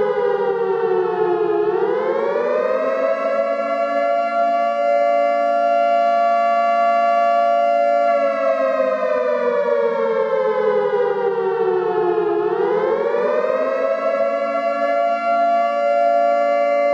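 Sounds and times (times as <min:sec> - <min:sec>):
air-raid siren wailing: 0:00.0 - 0:16.9.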